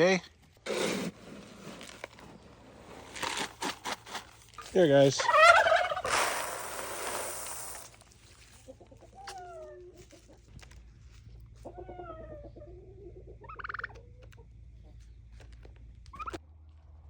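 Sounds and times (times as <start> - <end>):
poultry clucking: 5.2 - 6.9, 8.6 - 10.7, 11.5 - 15.3
poultry rattling call: 5.2 - 7.9.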